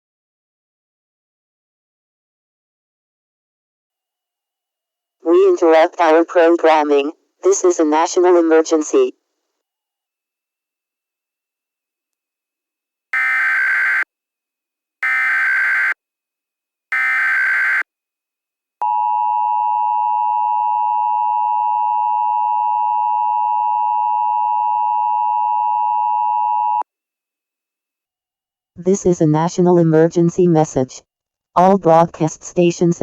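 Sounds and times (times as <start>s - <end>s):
two-tone attention signal: 13.2s - 14.0s, 15.0s - 16.0s, 16.9s - 17.8s
shrill digital data bursts: 13.2s - 14.1s, 15.0s - 16.0s, 16.9s - 17.8s.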